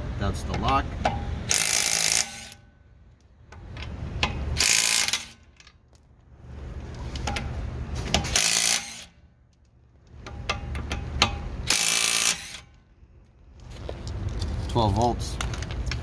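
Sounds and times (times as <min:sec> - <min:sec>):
impact wrench hammering: 0:00.5 - 0:02.6, 0:08.1 - 0:09.2, 0:10.2 - 0:12.7.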